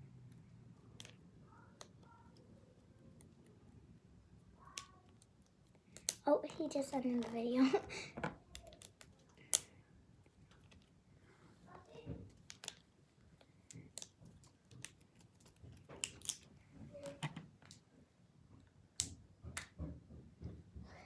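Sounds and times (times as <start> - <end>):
plastic fidget toys clicking: 4.6 - 9.8.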